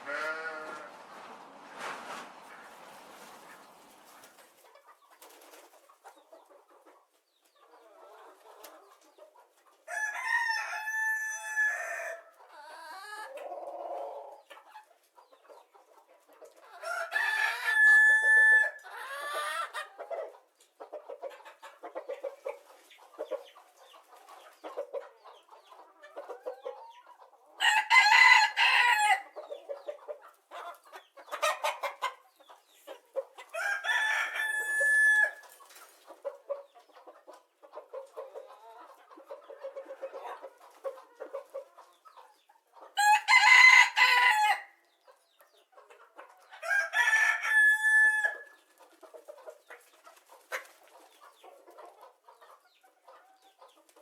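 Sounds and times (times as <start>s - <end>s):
chickens clucking: 0.0s - 44.2s, 44.8s - 54.0s
rooster crowing: 9.9s - 12.2s, 16.8s - 18.8s, 27.6s - 29.2s, 33.6s - 35.4s, 43.0s - 44.7s, 46.6s - 48.6s.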